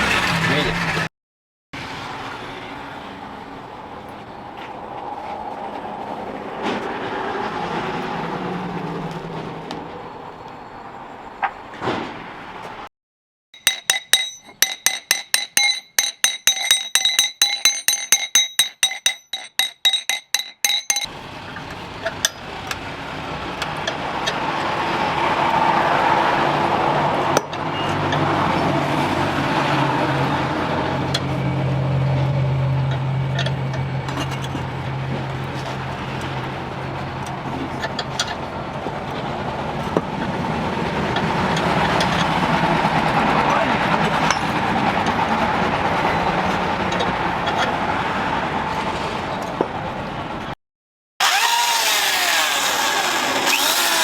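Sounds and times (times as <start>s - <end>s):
hammer striking steel on anvil: 13.6s - 21.1s.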